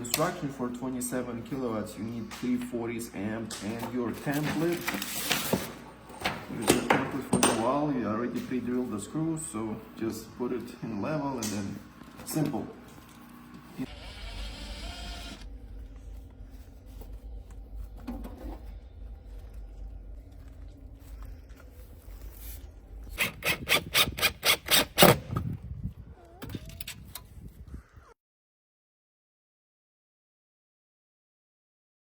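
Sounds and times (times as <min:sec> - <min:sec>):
low steady rumble: 0:13.8 - 0:23.2.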